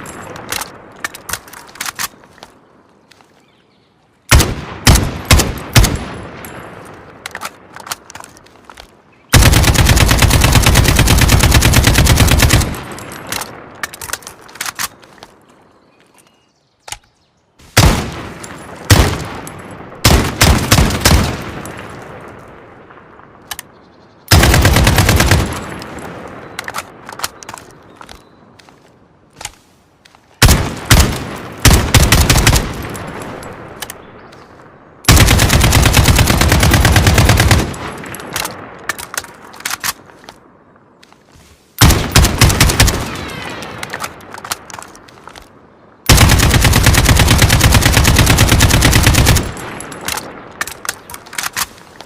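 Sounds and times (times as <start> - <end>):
rifle gunshots with echo: 4.3 - 6.6.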